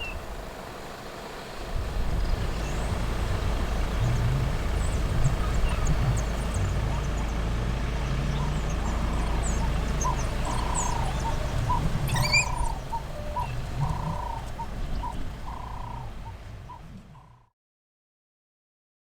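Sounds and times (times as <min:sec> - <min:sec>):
birds calling: 0:00.0 - 0:17.4
low engine hum: 0:00.0 - 0:17.5
high bird chirps: 0:04.8 - 0:16.8.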